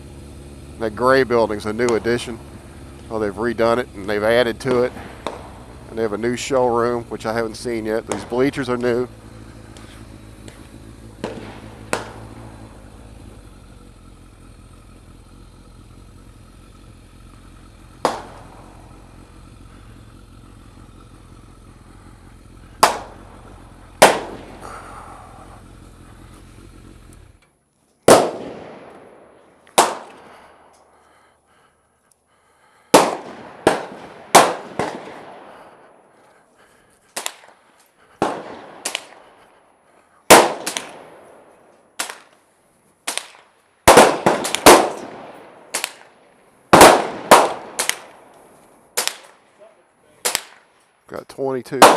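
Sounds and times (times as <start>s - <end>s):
motorcycle engine idling: 0.0s - 43.0s, 43.6s - 50.2s
gunshots with echo: 4.5s - 9.2s, 10.5s - 12.6s, 18.0s - 18.7s, 22.8s - 23.4s, 24.0s - 25.6s, 28.1s - 30.7s, 32.9s - 35.8s, 38.2s - 39.4s, 40.3s - 41.4s, 43.0s - 46.1s, 46.7s - 48.3s, 49.0s - 49.4s, 50.2s - 50.7s.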